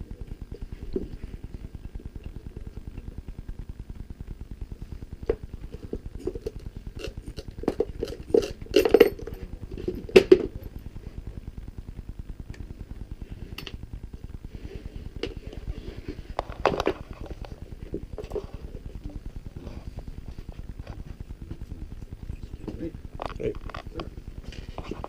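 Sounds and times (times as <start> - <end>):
low throbbing hum: 0.0 - 25.0.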